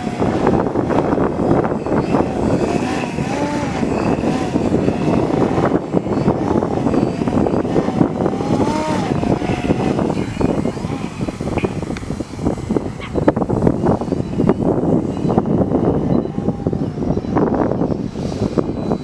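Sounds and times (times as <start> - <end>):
model airplane motor whining: 0.0 - 19.0
wind rumble on microphone: 0.0 - 19.0.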